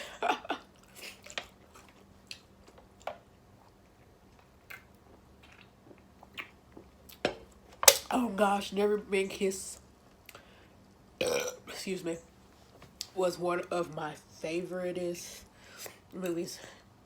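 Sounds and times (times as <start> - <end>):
soft chewing: 0.7 - 7.3
mouth clicks and smacks: 4.6 - 7.3.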